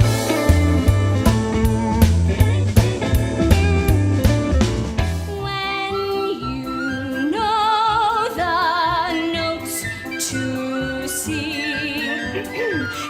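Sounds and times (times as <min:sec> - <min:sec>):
instrumental accompaniment: 0:00.0 - 0:13.0
woman singing operatically: 0:05.3 - 0:13.0.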